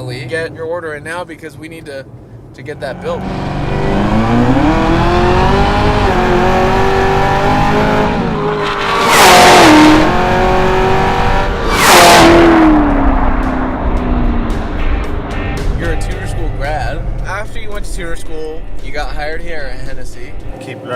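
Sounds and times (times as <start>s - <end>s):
car engine pulling hard: 2.7s - 15.4s.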